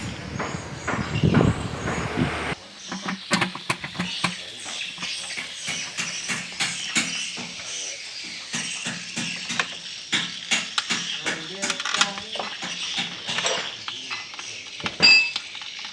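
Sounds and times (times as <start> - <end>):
tools and metal parts knocking: 0.0 - 2.6.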